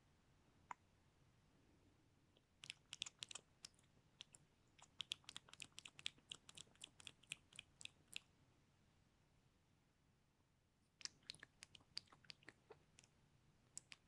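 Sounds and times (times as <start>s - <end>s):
tongue and lip clicks: 2.4s - 8.3s, 11.0s - 13.1s, 13.7s - 14.0s.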